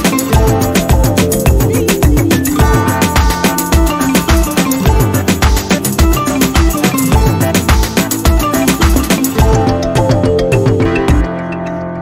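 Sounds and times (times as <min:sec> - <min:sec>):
electronic music with bass: 0:00.0 - 0:12.0.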